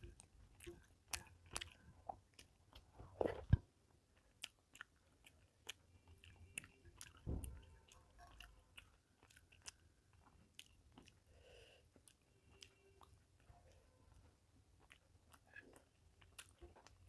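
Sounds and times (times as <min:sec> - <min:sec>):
person chewing food: 0:00.0 - 0:17.0
low thump: 0:07.2 - 0:07.6.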